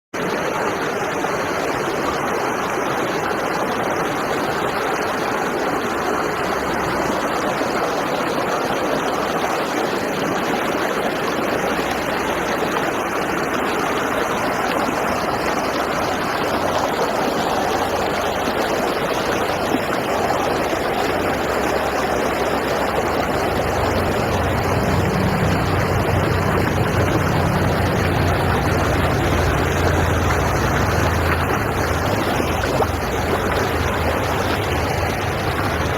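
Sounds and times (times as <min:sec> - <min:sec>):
river water rushing: 0:00.2 - 0:35.9
low rumble: 0:22.8 - 0:35.9.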